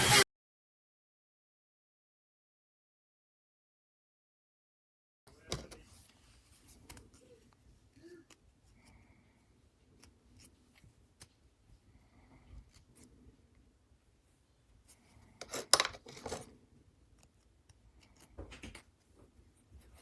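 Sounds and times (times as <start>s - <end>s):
faint clicks and handling noises: 5.3s - 20.0s
rustling scrape: 5.6s - 7.5s, 14.8s - 16.6s.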